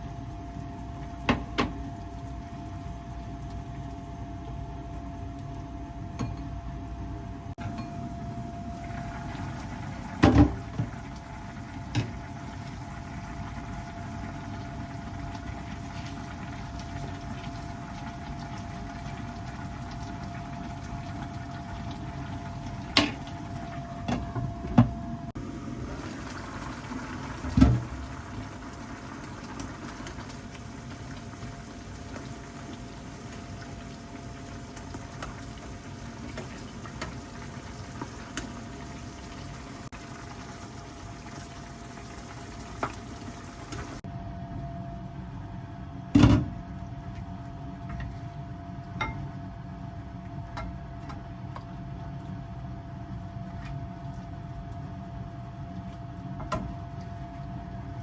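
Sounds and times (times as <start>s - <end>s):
steady cooking hiss: 0.0s - 6.1s, 7.4s - 24.0s, 25.3s - 44.1s
faint steady hum: 0.0s - 58.0s.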